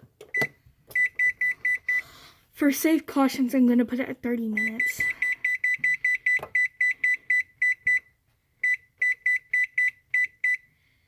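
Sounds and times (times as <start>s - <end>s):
oven control panel beeps: 0.2s - 2.0s, 4.6s - 10.6s.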